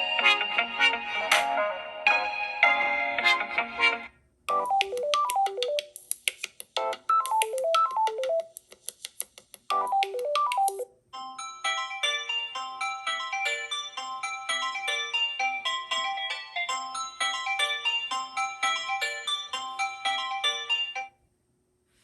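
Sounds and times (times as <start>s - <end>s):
bright chiming ringtone: 4.5s - 5.8s, 9.8s - 21.2s
ringtone of falling notes: 4.5s - 5.9s, 6.9s - 8.5s, 9.7s - 21.2s.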